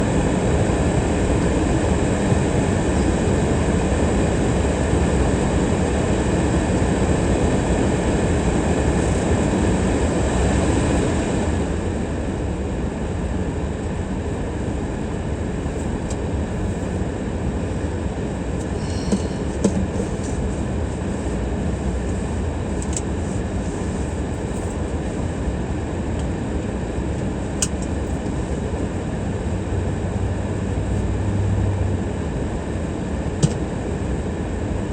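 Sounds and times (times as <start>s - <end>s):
car driving on road: 27.8s - 32.2s.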